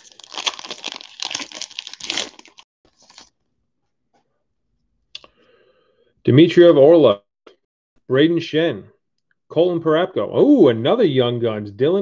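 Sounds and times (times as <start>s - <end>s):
wrapper crinkling and tearing: 0.0s - 3.3s.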